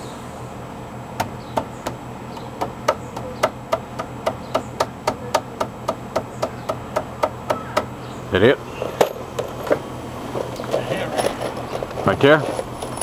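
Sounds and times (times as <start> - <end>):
hammer striking wood: 1.2 - 7.9.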